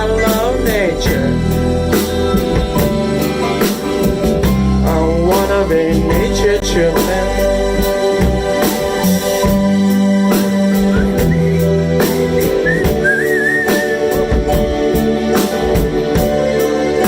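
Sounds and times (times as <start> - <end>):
person singing: 0.0 - 2.9, 4.8 - 8.0
band playing: 0.0 - 17.0.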